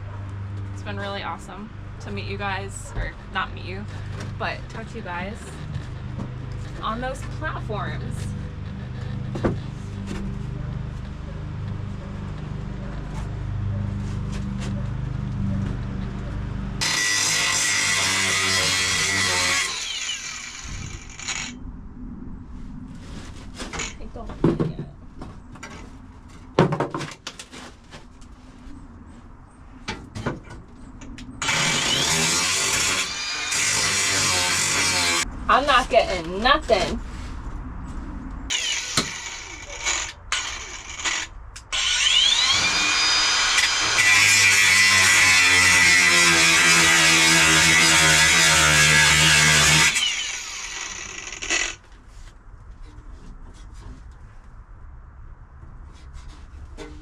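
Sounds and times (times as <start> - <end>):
power tool grinding sheet metal: 16.8 - 21.6, 31.4 - 35.3, 38.5 - 51.9
motor winding down whine: 19.6 - 21.6, 38.5 - 44.1.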